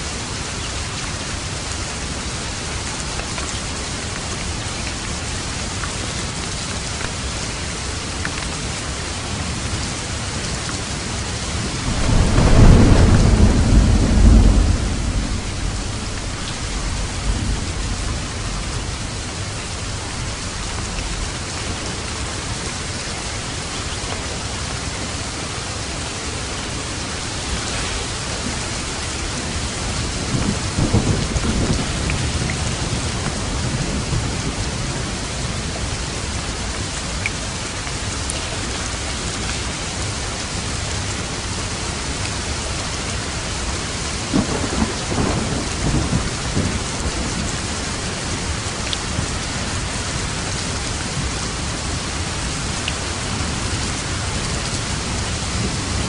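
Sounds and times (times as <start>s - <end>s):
heavy rain falling: 0.0s - 56.0s
thunder rumbling: 11.4s - 23.6s, 26.2s - 35.8s, 44.2s - 56.0s.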